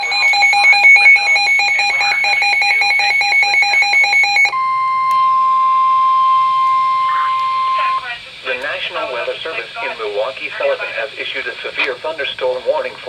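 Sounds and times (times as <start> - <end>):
shrill pulsing alert tones: 0.0 - 8.1
steady high alarm tone: 0.0 - 8.2.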